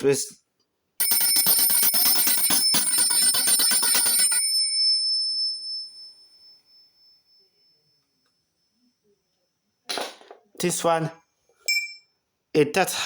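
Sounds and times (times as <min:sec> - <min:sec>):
small hand bell ringing: 0:01.0 - 0:08.9.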